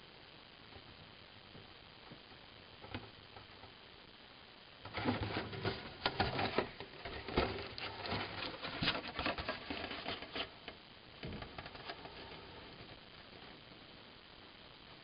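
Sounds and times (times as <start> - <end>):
cardboard box rustling and tapping: 4.9 - 10.5.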